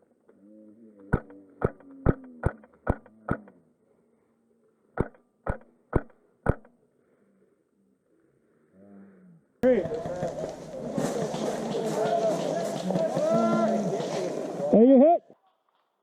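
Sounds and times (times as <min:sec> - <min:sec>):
airsoft rifle shots popping: 0:01.1 - 0:03.6, 0:05.0 - 0:06.8.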